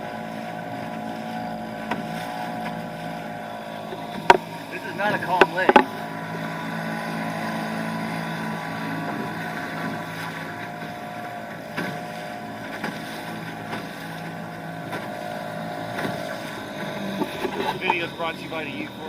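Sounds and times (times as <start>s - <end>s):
outboard motor running: 0.0s - 19.0s
short knocks: 5.1s - 6.0s.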